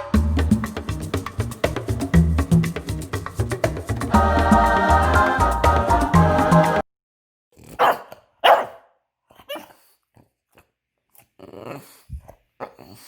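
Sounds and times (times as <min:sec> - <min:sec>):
background music: 0:00.0 - 0:06.8
rough vocal sound: 0:11.2 - 0:13.0.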